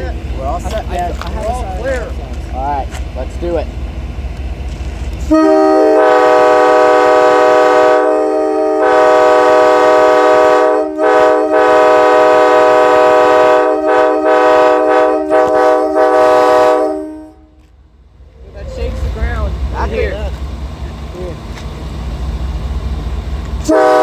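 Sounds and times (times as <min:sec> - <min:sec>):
train air horn chord: 0:05.2 - 0:17.6, 0:23.6 - 0:24.0.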